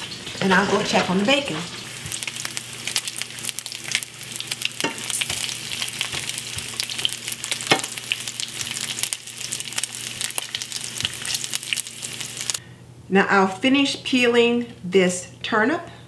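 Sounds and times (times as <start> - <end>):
bacon sizzling in a pan: 0.0 - 12.6.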